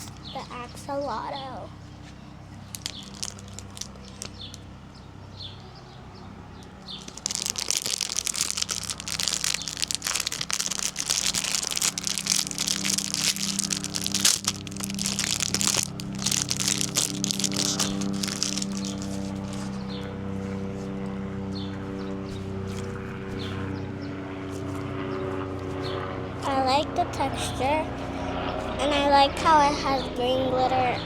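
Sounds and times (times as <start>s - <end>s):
plastic packaging crinkling: 2.7s - 4.6s, 7.0s - 19.8s.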